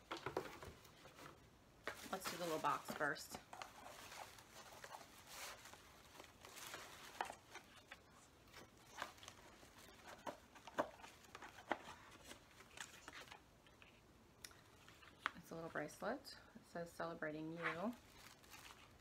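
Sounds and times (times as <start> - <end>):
gift box rustling and tapping: 0.0 - 7.8, 8.5 - 13.0.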